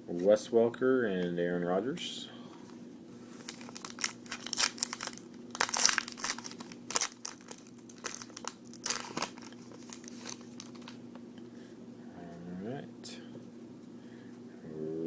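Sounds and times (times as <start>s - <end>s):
faint steady hum: 0.0s - 15.0s
trading cards crinkling and rustling: 3.3s - 11.0s.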